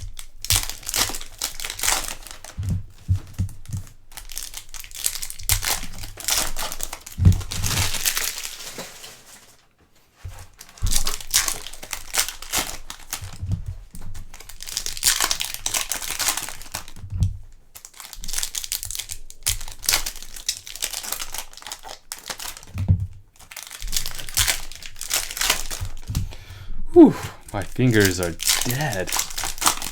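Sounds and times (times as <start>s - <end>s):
foil wrappers crinkling: 0.0s - 26.4s, 27.4s - 29.9s
dull thump: 7.2s - 7.8s.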